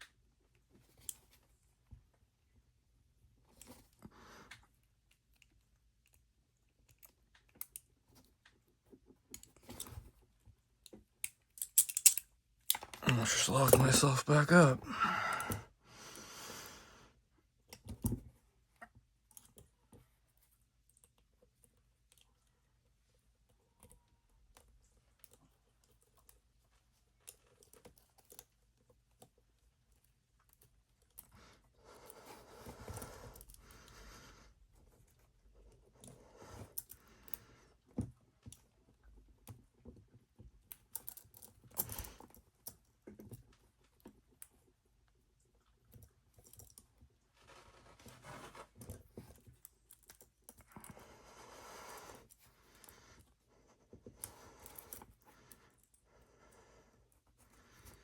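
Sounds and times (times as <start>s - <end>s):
small metal clicks and scrapes: 10.8s - 13.0s
handcuffs rattling: 11.5s - 13.0s.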